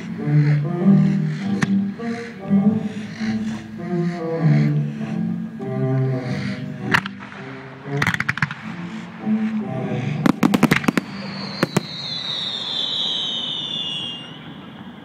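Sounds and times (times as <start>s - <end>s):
music: 0.0s - 12.1s
fireworks bangs: 10.2s - 14.7s
falling firework whistle: 10.3s - 15.0s.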